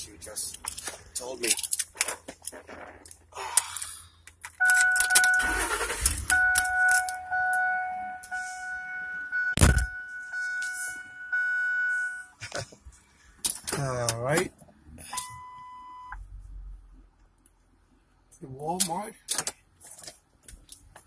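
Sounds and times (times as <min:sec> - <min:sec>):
dashboard warning chime: 0:04.6 - 0:12.4, 0:15.1 - 0:16.2.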